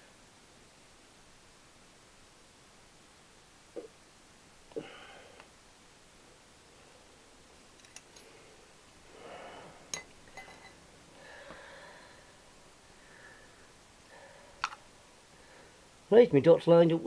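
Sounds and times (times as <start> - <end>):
person breathing: 4.7 - 5.5, 8.1 - 9.9, 11.1 - 16.0.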